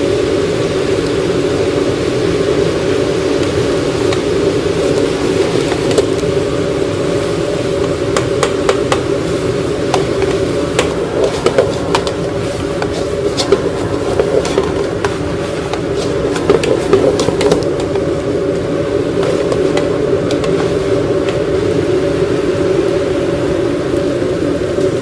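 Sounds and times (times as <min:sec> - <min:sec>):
ventilation fan drone: 0:00.0 - 0:25.0
utensils and dishes clinking: 0:07.1 - 0:21.9.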